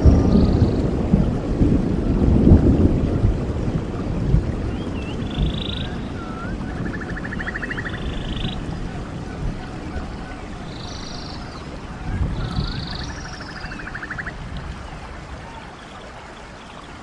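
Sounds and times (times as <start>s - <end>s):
songbird singing: 0.0s - 1.1s, 4.6s - 17.0s
stream water rushing: 0.0s - 17.0s.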